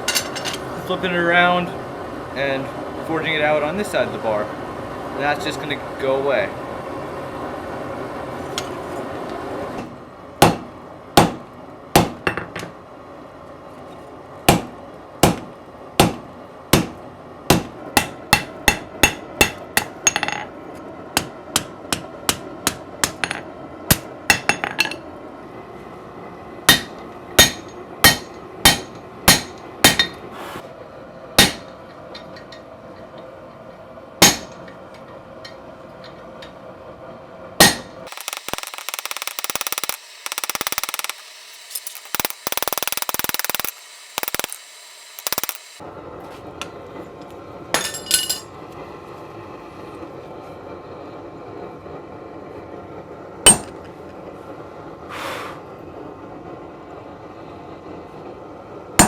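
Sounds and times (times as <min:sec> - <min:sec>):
hammer striking hot metal on anvil: 0:10.4 - 0:11.4, 0:12.0 - 0:12.4, 0:14.5 - 0:20.5, 0:21.2 - 0:25.0, 0:26.7 - 0:30.2, 0:31.4 - 0:32.5, 0:34.2 - 0:34.7, 0:37.6 - 0:38.0, 0:53.5 - 0:53.8.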